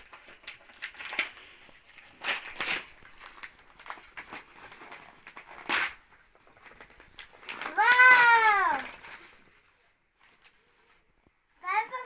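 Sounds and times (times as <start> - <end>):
packaging rustling and crinkling: 0.0 - 12.0.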